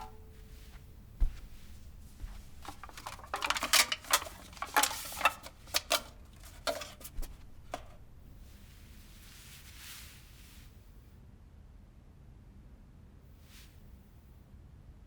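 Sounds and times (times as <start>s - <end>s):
small hard objects clattering: 0.0s - 8.2s.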